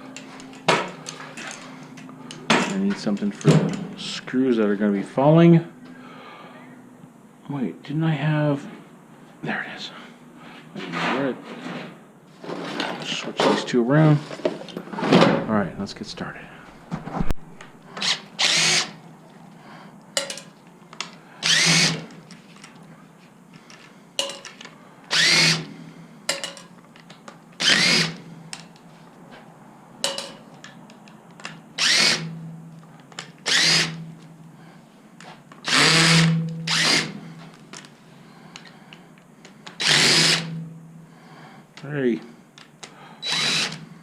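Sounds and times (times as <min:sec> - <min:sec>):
cordless drill whining: 0:18.0 - 0:19.0, 0:21.4 - 0:22.2, 0:25.1 - 0:25.7, 0:27.6 - 0:28.3, 0:31.8 - 0:32.4, 0:33.4 - 0:34.1, 0:35.6 - 0:37.3, 0:39.7 - 0:40.6, 0:43.2 - 0:43.9
handling knocks and clicks: 0:20.1 - 0:21.2, 0:23.5 - 0:24.8.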